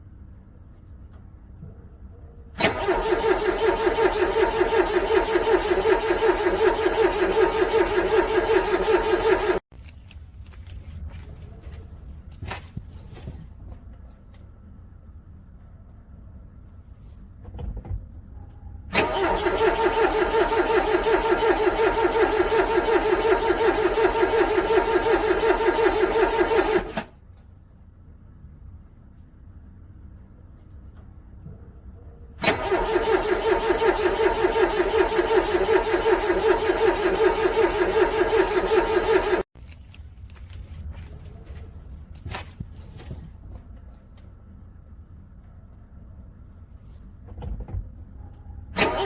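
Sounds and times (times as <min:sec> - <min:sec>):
car starter motor cranking: 0:02.6 - 0:09.6, 0:18.9 - 0:27.2, 0:32.4 - 0:39.5, 0:48.7 - 0:49.0.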